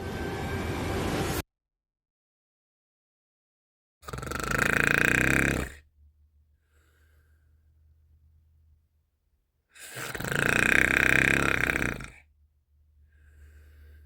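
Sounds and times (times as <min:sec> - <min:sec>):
person snoring loudly: 0:04.0 - 0:05.9, 0:09.8 - 0:12.3
faint breath: 0:06.5 - 0:08.0, 0:09.7 - 0:10.2, 0:13.0 - 0:14.0.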